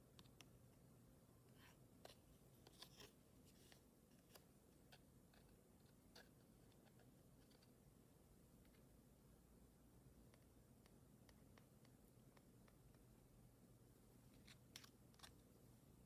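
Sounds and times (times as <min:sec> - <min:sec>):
hands handling small materials: 0:14.3 - 0:15.7.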